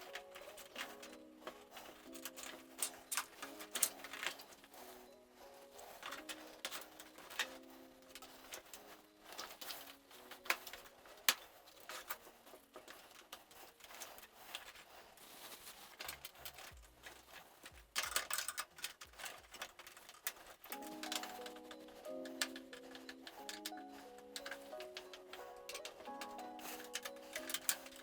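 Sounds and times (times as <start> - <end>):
clicks of computer parts handled: 15.9 - 28.0.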